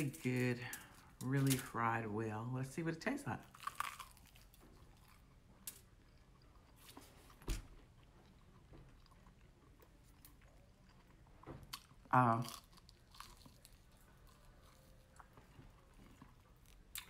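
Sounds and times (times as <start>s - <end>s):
chewing crispy fried chicken: 3.4s - 17.0s.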